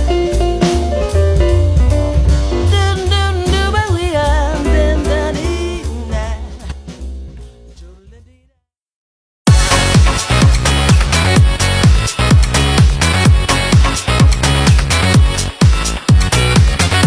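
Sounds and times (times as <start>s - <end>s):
ringtone band music: 0.0s - 7.3s, 9.5s - 17.0s.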